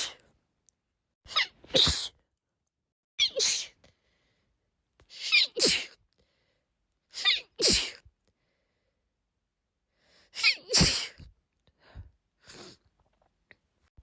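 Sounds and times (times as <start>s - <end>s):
woman sneezing: 1.3s - 2.2s, 5.2s - 6.0s, 10.4s - 11.3s.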